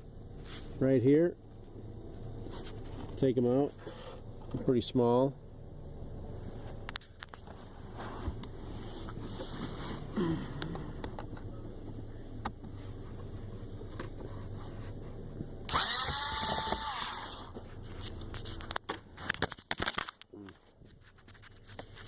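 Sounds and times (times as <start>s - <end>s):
low steady hum: 0.0s - 22.0s
cordless drill whine: 15.7s - 17.5s.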